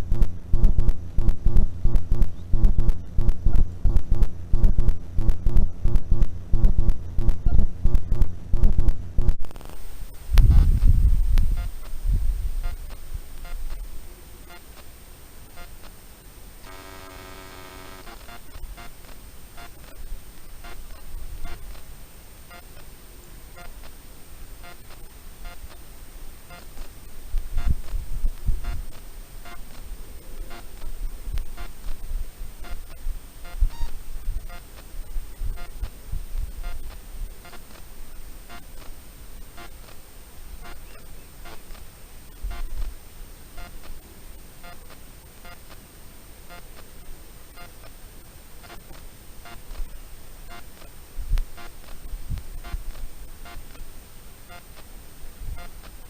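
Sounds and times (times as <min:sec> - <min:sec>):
short animal calls: 0:32.6 - 0:34.8.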